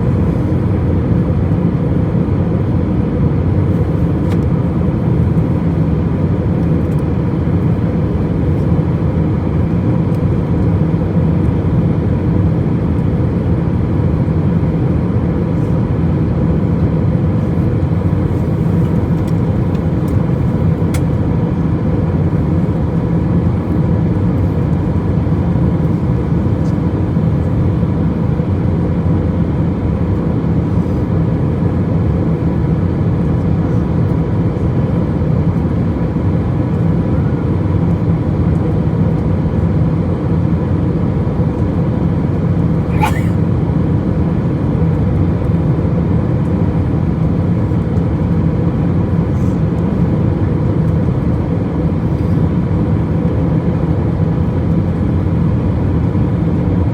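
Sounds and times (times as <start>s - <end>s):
airplane cabin rumble: 0.0s - 56.9s.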